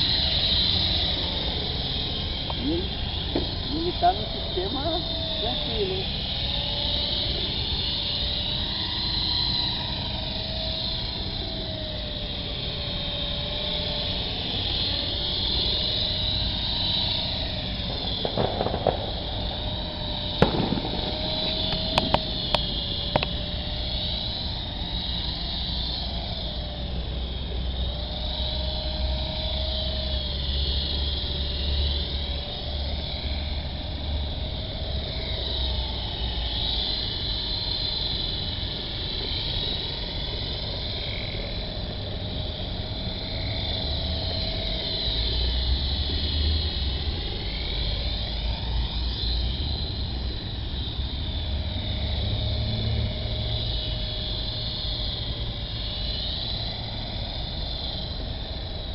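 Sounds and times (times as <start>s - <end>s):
rc helicopter rotors whining: 0.0s - 58.9s
sharp clicks: 20.3s - 23.4s.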